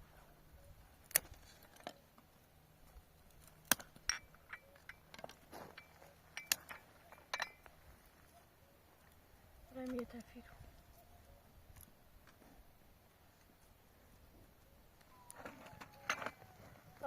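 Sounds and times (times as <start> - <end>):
hard objects clinking and knocking: 3.7 - 7.8.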